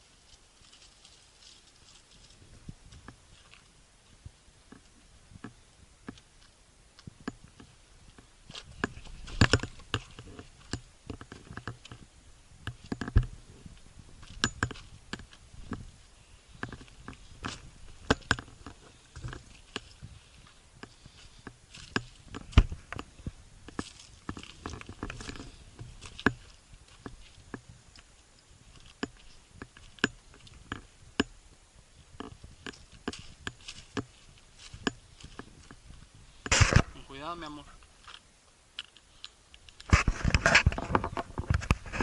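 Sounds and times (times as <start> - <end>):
footsteps on loose rock and gravel: 0.0 - 38.9.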